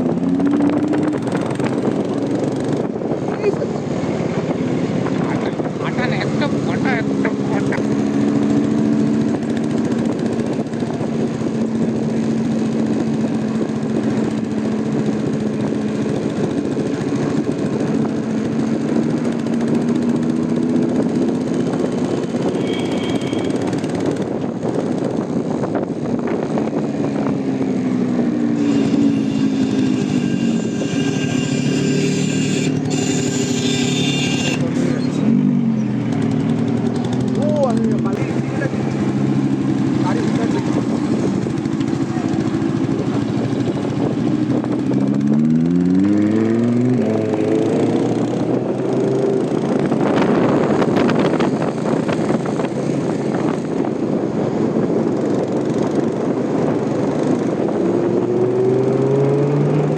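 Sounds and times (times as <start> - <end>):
brief high tone: 22.6 - 23.6
vehicle engine running: 34.0 - 48.5.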